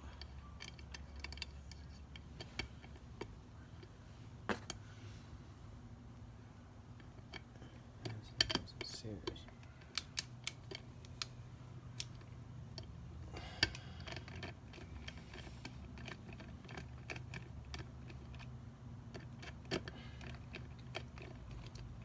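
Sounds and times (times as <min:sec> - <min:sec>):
clicks of small metal parts: 0:08.0 - 0:11.4, 0:12.0 - 0:12.9.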